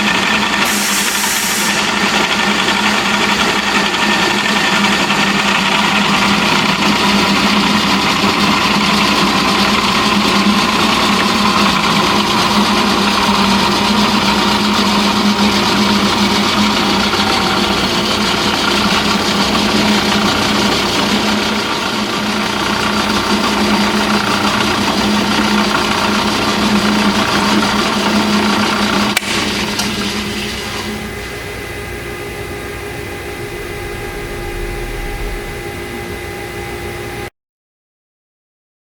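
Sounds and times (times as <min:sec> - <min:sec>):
drill press running: 0:00.0 - 0:36.1
quiet hum: 0:32.4 - 0:36.8.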